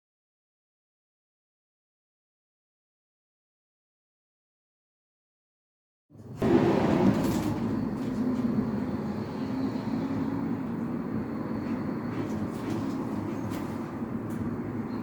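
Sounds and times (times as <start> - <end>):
low rumbling noise: 6.2 - 13.4.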